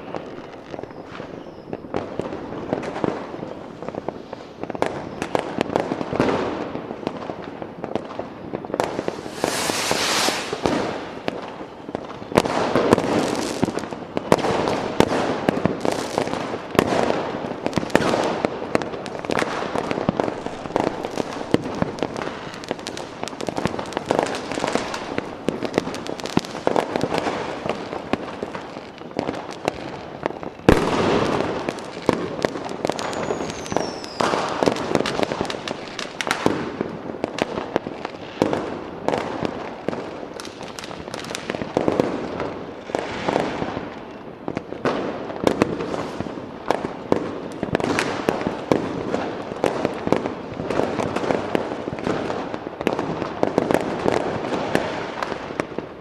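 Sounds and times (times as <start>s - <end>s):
fireworks bangs and crackling: 0.0s - 56.0s.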